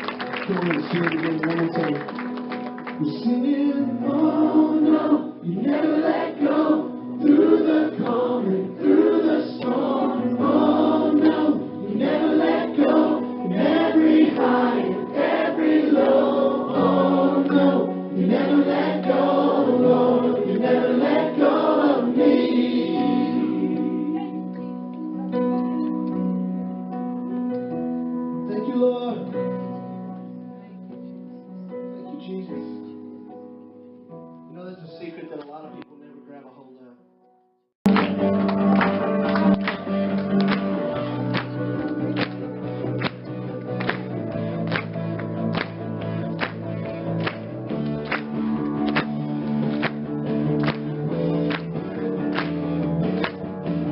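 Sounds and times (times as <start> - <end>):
sustained keyboard chords: 0.0 - 32.1, 37.9 - 53.9
choir singing: 3.4 - 24.6.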